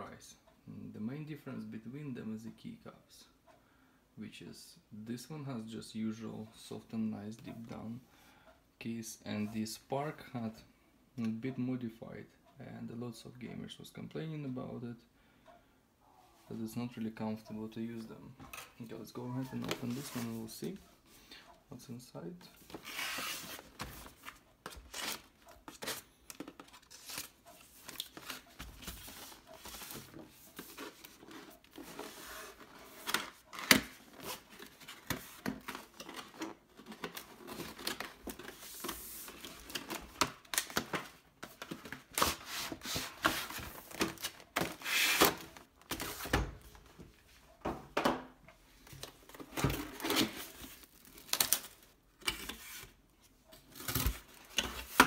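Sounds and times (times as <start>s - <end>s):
packaging rustling and tearing: 22.6s - 46.3s, 49.3s - 53.0s.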